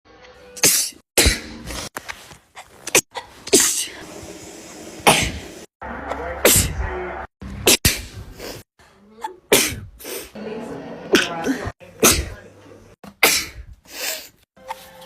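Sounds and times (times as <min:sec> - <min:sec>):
women sneezing: 0:09.1 - 0:10.3, 0:11.1 - 0:12.4, 0:13.2 - 0:14.4.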